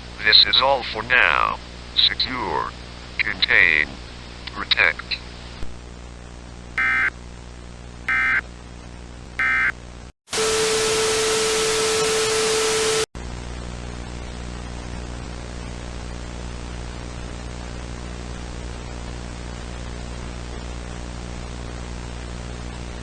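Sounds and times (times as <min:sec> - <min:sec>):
digital data tone bursts: 0:06.8 - 0:07.1, 0:08.1 - 0:08.4, 0:09.4 - 0:09.7.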